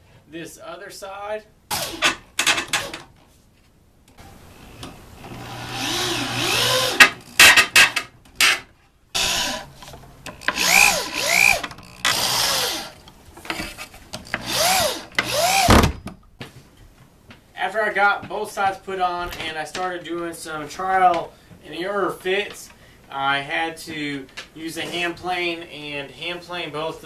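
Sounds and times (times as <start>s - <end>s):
cordless drill motor whine: 4.6s - 7.4s, 9.2s - 9.8s, 10.4s - 13.0s, 14.2s - 15.8s.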